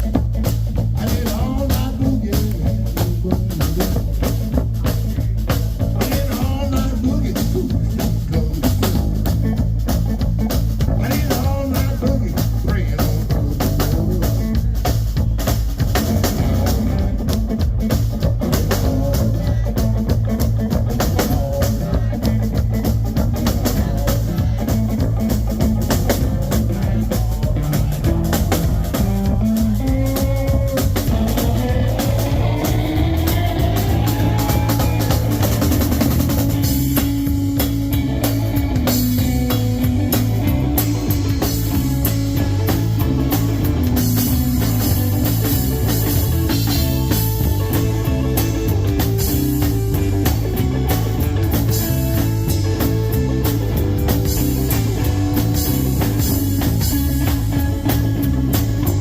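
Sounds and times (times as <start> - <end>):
blues band playing: 0.0 - 59.0
lead guitar sliding notes: 16.0 - 59.0.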